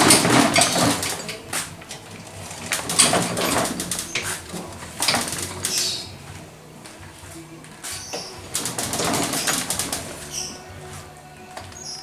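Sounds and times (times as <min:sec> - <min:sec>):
sharp knocks and rattles: 0:00.0 - 0:06.2, 0:08.5 - 0:10.4
trolley wheels rolling and scraping: 0:00.0 - 0:12.0.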